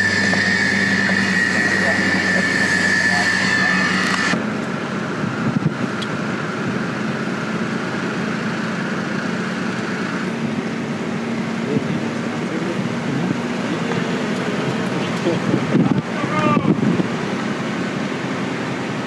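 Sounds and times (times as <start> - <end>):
thin high tone: 0.0 - 4.4
steady low hum: 0.0 - 7.9
car road and engine noise: 0.0 - 19.0.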